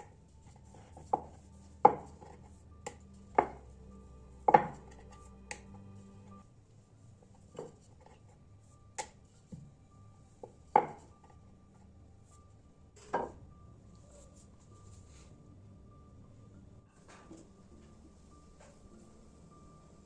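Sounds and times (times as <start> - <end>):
utensils knocking on cookware: 4.5 - 5.7.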